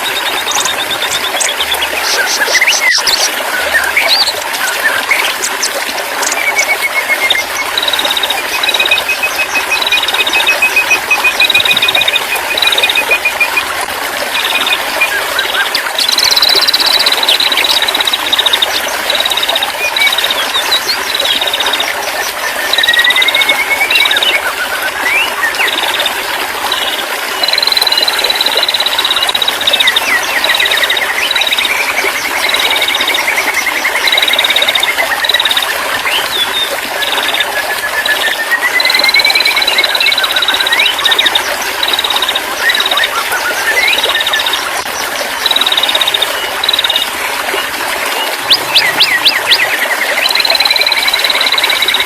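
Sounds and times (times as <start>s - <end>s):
birds trilling: 0.0s - 11.9s.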